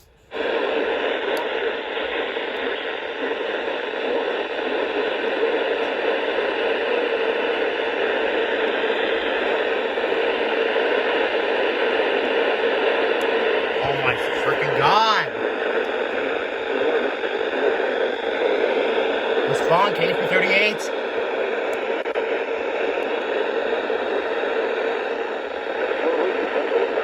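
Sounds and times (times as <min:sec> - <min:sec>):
radio static hiss: 0:13.7 - 0:17.7, 0:19.3 - 0:21.1.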